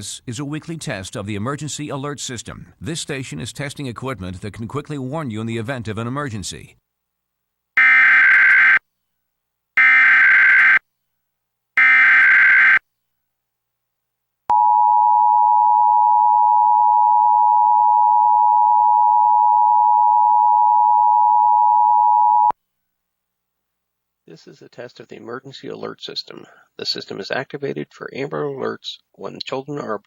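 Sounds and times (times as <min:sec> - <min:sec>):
steady attention tone: 0:14.5 - 0:22.5.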